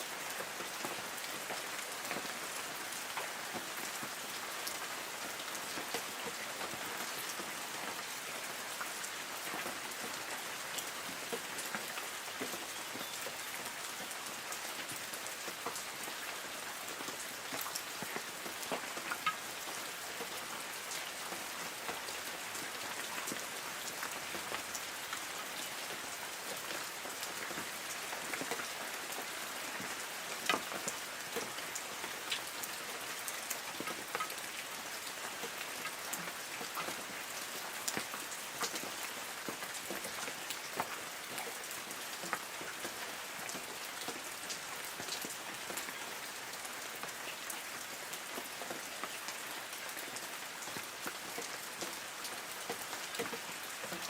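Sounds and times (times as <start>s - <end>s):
raindrops pattering on leaves: 0.0s - 54.0s.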